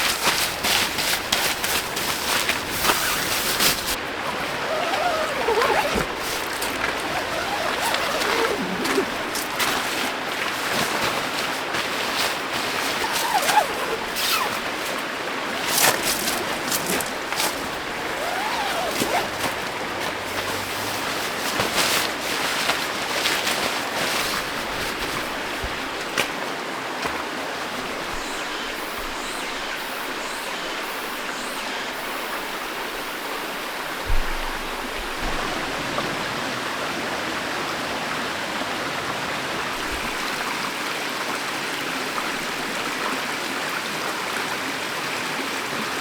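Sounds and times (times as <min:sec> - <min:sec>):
stream rushing: 0:00.0 - 0:28.7.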